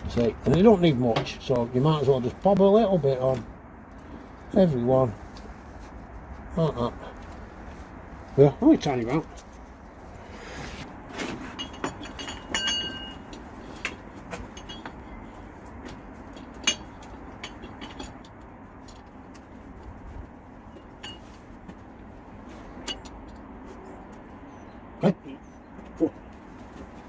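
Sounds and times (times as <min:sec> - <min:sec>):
metal parts and tools clinking: 0:11.1 - 0:19.4, 0:20.6 - 0:21.6, 0:22.6 - 0:23.5.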